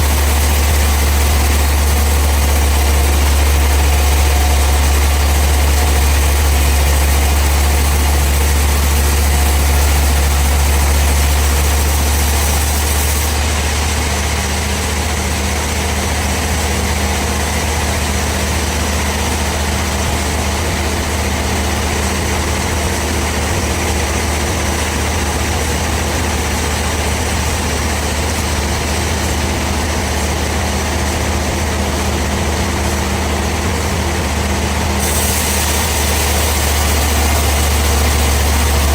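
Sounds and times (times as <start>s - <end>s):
sawmill machinery humming: 0.0s - 38.9s
high hiss: 34.7s - 38.9s.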